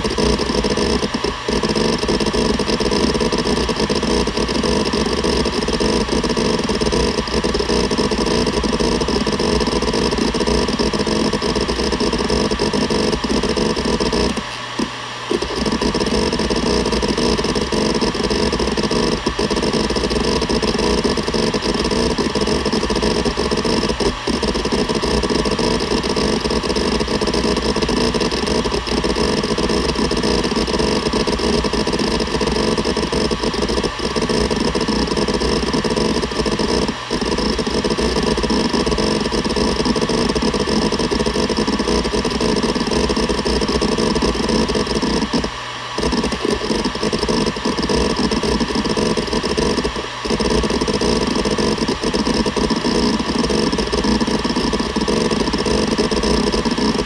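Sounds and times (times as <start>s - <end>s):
hard drive seeking chatter: 0.0s - 57.0s.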